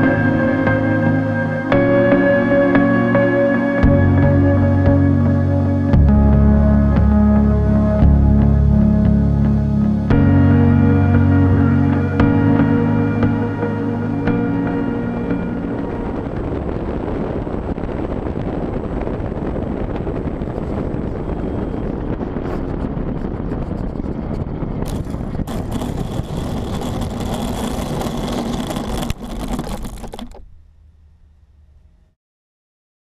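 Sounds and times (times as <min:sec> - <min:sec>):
wind rushing: 0:14.6 - 0:29.1
electric motor and propeller: 0:22.2 - 0:30.4.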